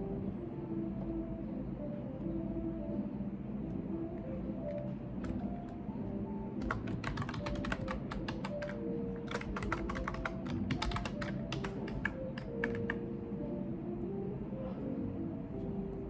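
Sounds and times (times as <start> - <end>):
computer keyboard typing: 5.2 - 5.8, 6.6 - 13.0.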